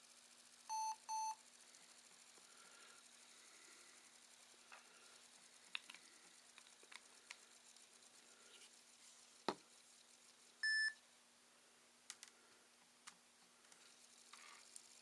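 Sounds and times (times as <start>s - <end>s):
short electronic beep: 10.6s - 11.0s.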